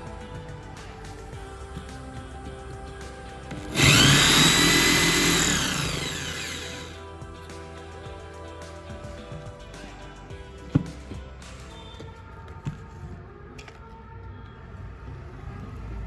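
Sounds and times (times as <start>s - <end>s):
background music: 0.0s - 16.0s
electric drill motor whine: 3.5s - 7.0s.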